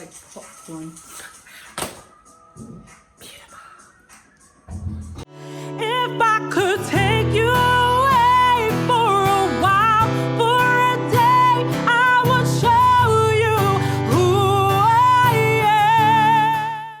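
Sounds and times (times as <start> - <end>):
guitar: 4.7 - 17.0.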